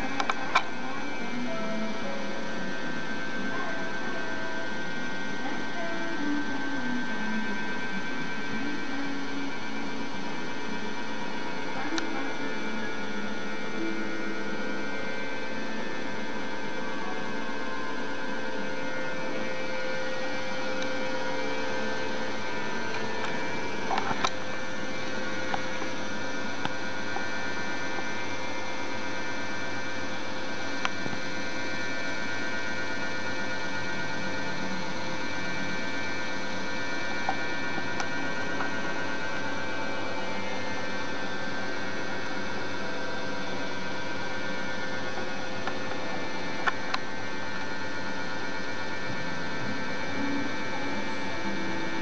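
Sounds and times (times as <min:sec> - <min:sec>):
electrical hum: 0:00.0 - 0:52.0.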